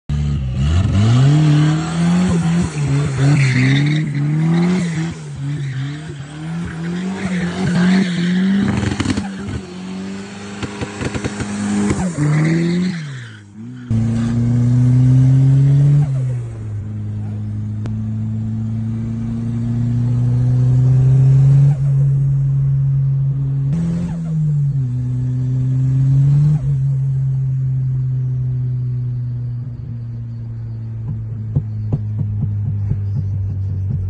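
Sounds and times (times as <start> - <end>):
car engine revving: 0.1 - 34.0
tyre squeal: 2.3 - 9.7, 11.0 - 14.4.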